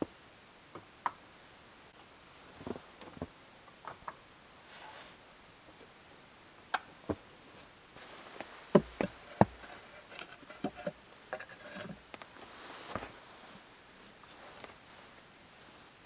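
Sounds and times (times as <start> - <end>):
irregular knocks and clicks: 8.7 - 9.7.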